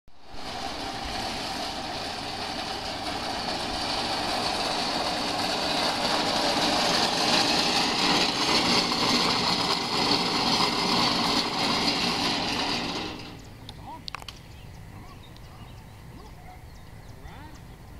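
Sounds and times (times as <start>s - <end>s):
scooter running: 0.2s - 13.7s.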